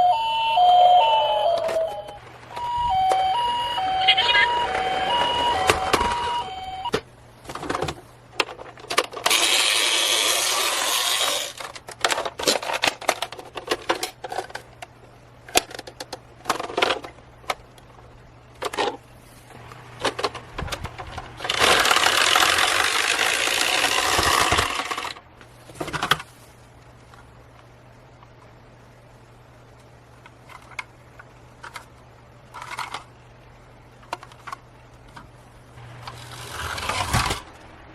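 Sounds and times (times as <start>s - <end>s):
toy cars clicking together: 8.5s - 14.7s, 21.4s - 25.2s
toy cars rattling down a slide: 9.2s - 11.8s, 21.4s - 25.2s, 36.1s - 37.5s.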